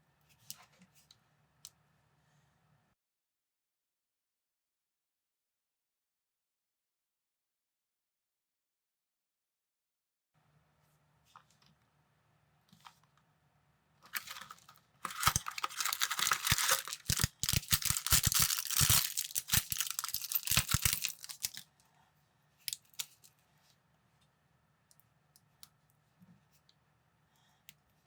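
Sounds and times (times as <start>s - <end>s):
plastic bag tearing and crinkling: 14.1s - 21.6s, 22.7s - 23.3s.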